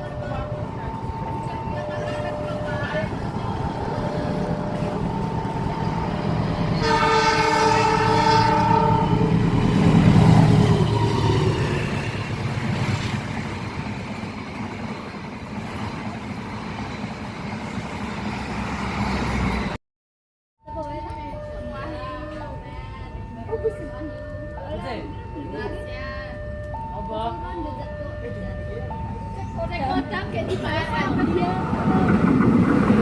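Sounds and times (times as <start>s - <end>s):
passing train rumble: 0.0s - 19.8s, 20.7s - 33.0s
train horn: 6.8s - 9.4s.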